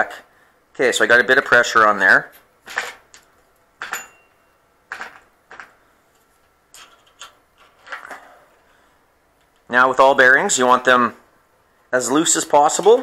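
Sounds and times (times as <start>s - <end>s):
light metallic clicks and knocks: 2.3s - 8.2s.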